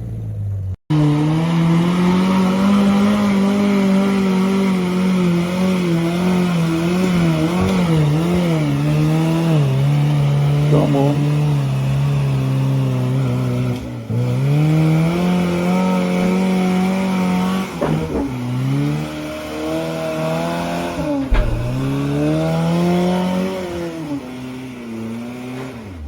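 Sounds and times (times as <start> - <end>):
off-road engine revving: 0.0 - 26.0
thump: 17.8 - 18.4, 21.0 - 22.5.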